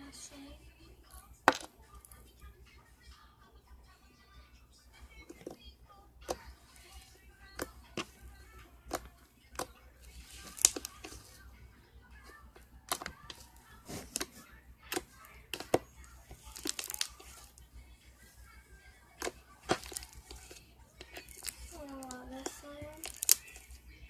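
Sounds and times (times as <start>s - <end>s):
faint background music: 0.0s - 24.0s
slime wet clicks and pops: 16.6s - 17.3s, 23.0s - 23.5s.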